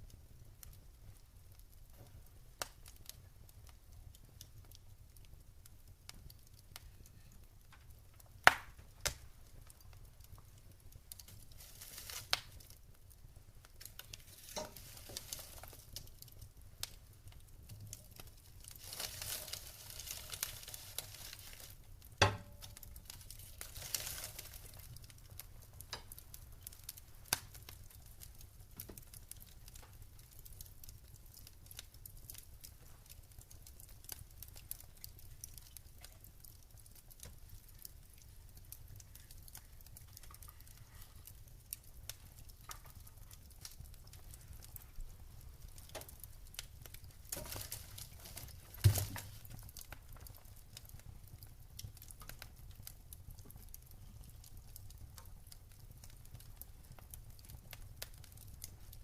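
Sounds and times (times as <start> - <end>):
wood fire crackling and popping: 0.0 - 59.0
soft hissing: 14.1 - 16.0.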